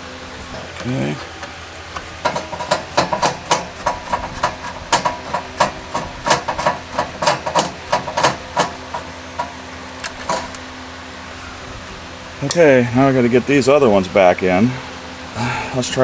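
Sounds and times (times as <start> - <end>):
metal parts clinking and knocking: 0.5 - 10.7.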